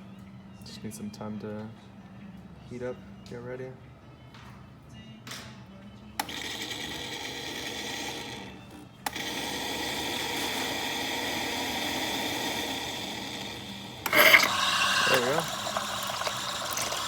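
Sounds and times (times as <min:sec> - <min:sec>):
espresso machine pump running: 0:06.2 - 0:17.0.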